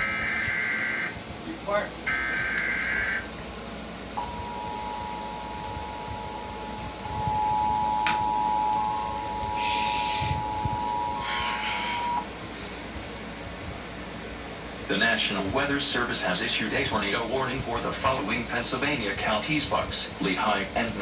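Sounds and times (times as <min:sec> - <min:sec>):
steady two-tone beep: 0:07.1 - 0:12.2.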